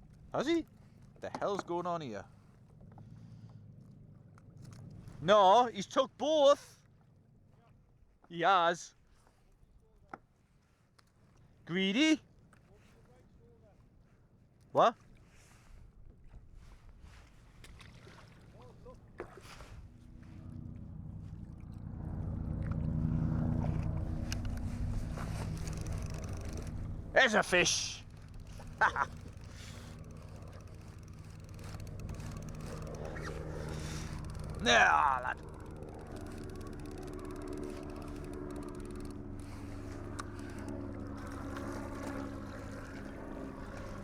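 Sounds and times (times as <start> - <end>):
boat motor humming: 0.0 - 6.0, 17.6 - 44.0
water: 0.0 - 44.0
wind: 0.0 - 44.0.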